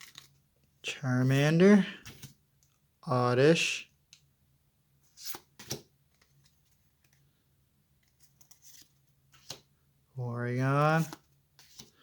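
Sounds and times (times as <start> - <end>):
cards rustling: 0.0 - 0.4, 1.2 - 2.4, 8.0 - 9.7, 10.5 - 12.0.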